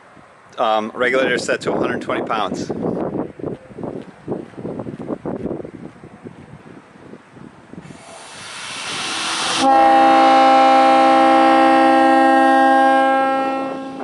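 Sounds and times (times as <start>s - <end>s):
rushing air hiss: 7.8s - 11.3s
locomotive air horn chord: 8.7s - 14.0s.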